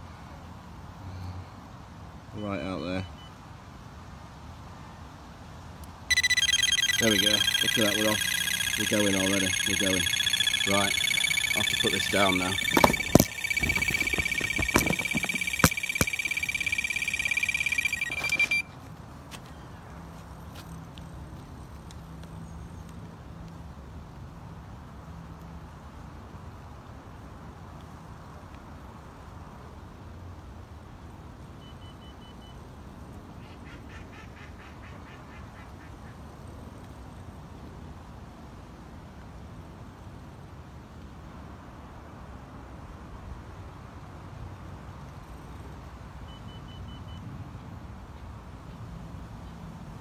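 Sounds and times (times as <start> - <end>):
bite alarm high beeps: 6.1 - 18.7.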